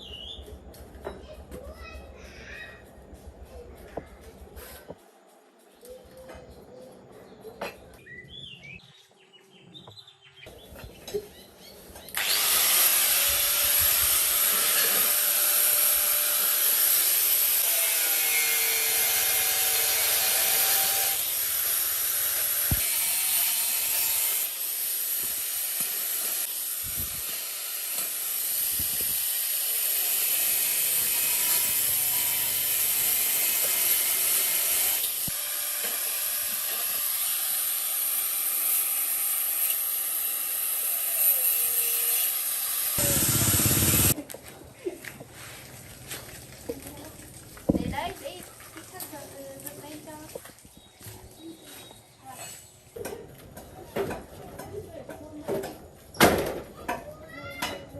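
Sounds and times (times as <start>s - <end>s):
power tool running with harsh hiss: 12.2s - 44.2s.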